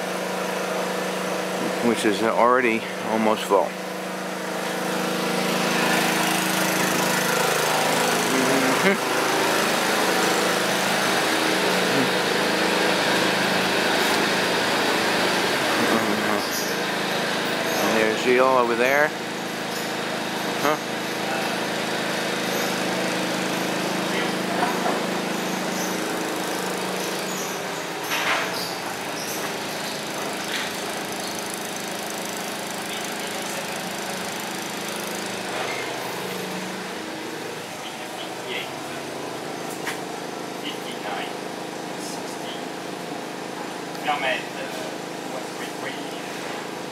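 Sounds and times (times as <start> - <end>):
machinery droning: 0.0 - 43.1
small motor humming: 2.9 - 39.8.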